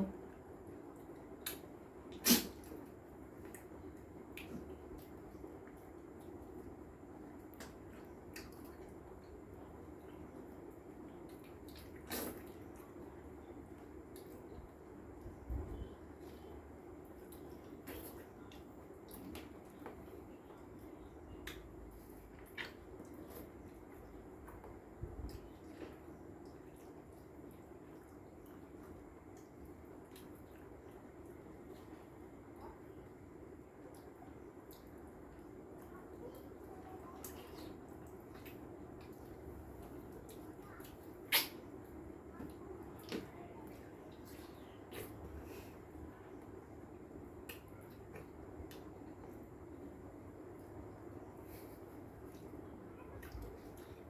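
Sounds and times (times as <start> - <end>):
wet smacking and sucking: 41.2 - 41.7.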